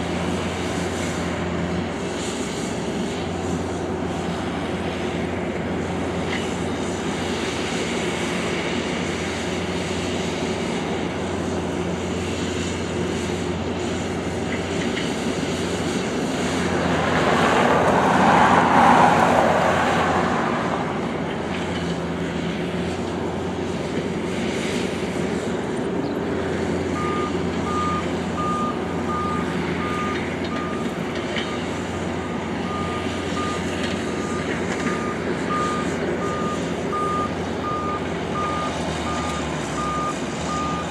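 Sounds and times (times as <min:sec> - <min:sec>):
diesel engine running: 0:00.0 - 0:40.9
backup alarm beeping: 0:27.0 - 0:31.6, 0:32.3 - 0:40.9.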